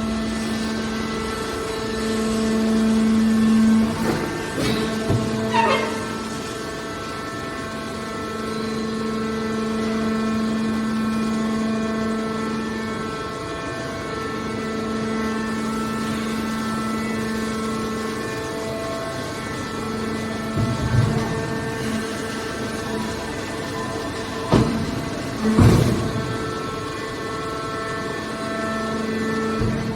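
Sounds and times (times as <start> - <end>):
hydraulic power unit hum-whine: 0.0 - 29.9
metallic screech: 3.9 - 6.5.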